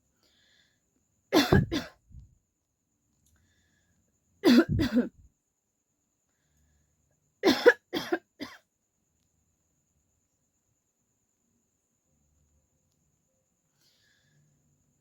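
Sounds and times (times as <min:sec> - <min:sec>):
woman coughing: 0:01.3 - 0:02.0, 0:04.4 - 0:05.2, 0:07.4 - 0:08.6.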